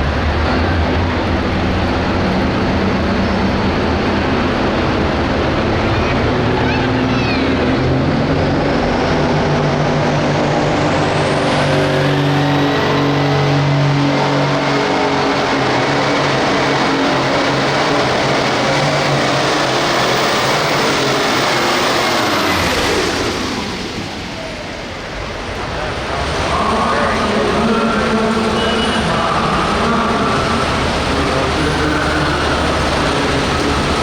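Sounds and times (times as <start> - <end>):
tractor diesel engine revving: 0.0 - 34.0.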